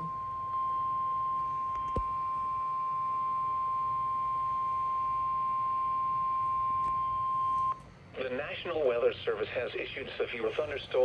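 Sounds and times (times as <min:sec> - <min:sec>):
steady high alarm tone: 0:00.0 - 0:07.8.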